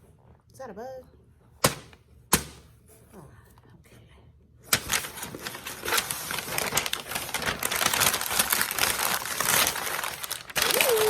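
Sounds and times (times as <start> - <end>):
packaging crinkling and rustling: 4.7 - 11.0.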